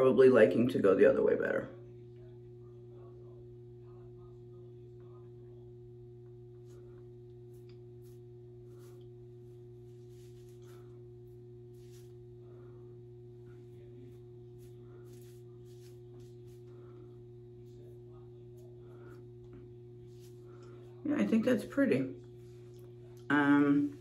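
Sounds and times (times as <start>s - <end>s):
steady hum with fixed tones: 0.0s - 24.0s
faint rustles of fibres: 6.6s - 21.0s.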